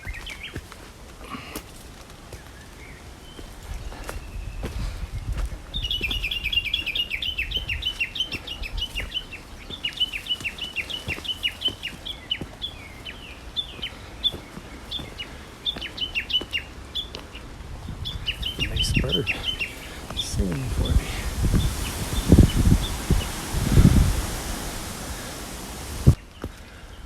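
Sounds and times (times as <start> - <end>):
songbird chirping: 2.3 - 27.0.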